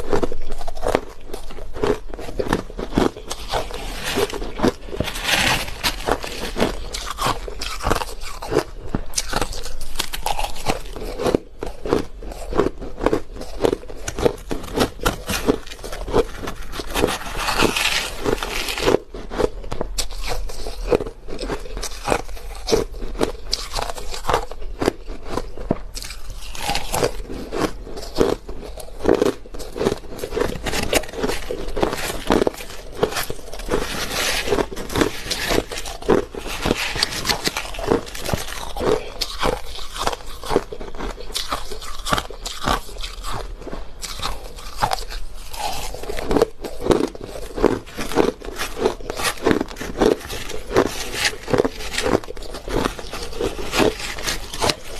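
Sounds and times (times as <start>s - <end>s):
crushed ice being chewed: 0.0s - 54.9s.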